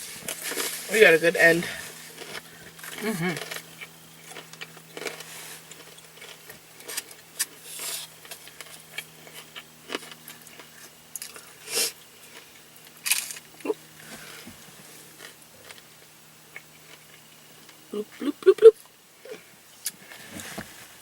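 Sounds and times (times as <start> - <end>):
loud crunches: 1.6 - 15.8
chewing: 2.1 - 11.5, 16.5 - 17.8.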